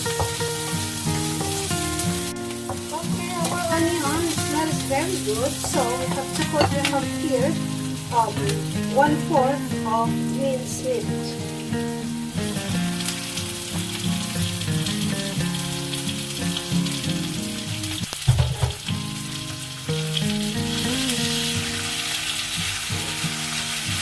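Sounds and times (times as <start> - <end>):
background music: 0.0 - 14.8
meat and onions sizzling: 0.0 - 24.0
sharp knock: 18.2 - 18.8.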